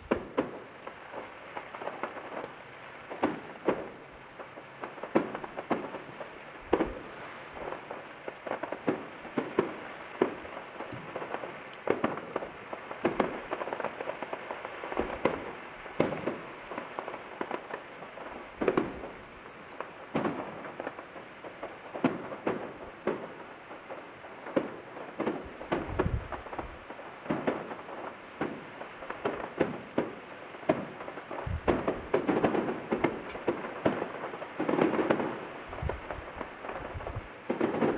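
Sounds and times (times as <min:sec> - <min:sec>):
loud single firework bangs: 0:00.0 - 0:02.5, 0:04.8 - 0:17.8, 0:24.4 - 0:37.9
distant fireworks bangs and crackling: 0:00.0 - 0:37.9.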